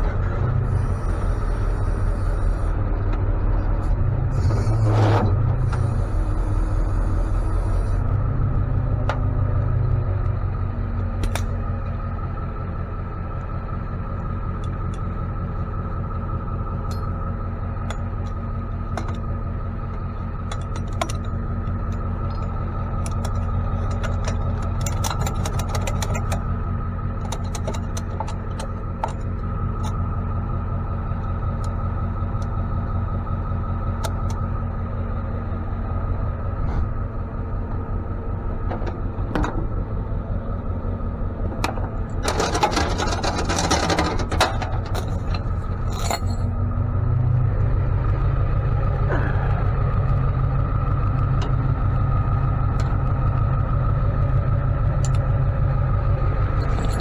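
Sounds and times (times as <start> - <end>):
truck engine droning: 0.0 - 57.0
clicks and rattles: 20.5 - 26.5, 27.2 - 30.0, 41.4 - 46.5, 56.6 - 57.0.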